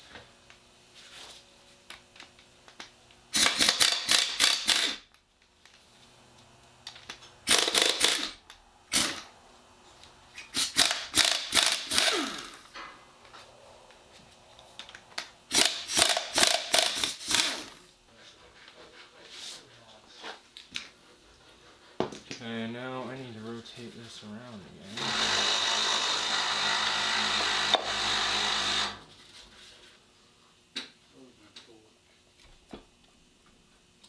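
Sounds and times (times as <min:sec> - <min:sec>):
socket ratchet clicking: 0:03.4 - 0:05.0, 0:07.5 - 0:08.4, 0:10.5 - 0:12.6, 0:15.5 - 0:17.8.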